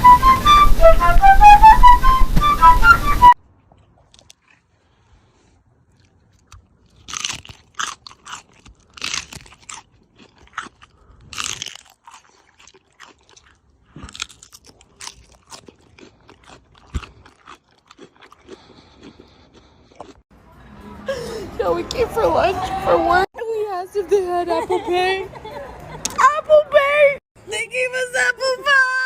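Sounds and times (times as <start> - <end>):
sharp crunches: 6.0 - 20.2.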